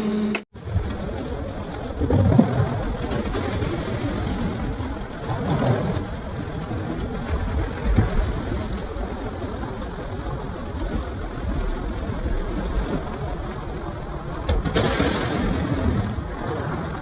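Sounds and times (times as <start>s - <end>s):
heavy engine rumbling: 0.0s - 0.5s.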